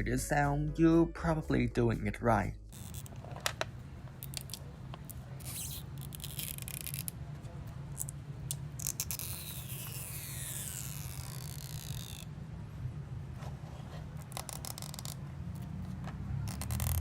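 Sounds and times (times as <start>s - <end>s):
adhesive strip crackling and squeaking: 2.7s - 3.4s, 4.2s - 7.2s, 7.9s - 12.3s, 14.1s - 17.0s.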